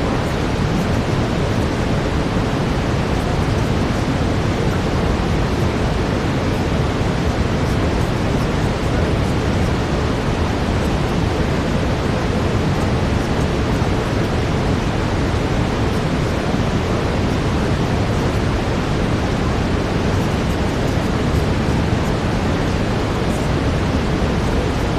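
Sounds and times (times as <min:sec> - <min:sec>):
brown noise hiss: 0:00.0 - 0:24.9.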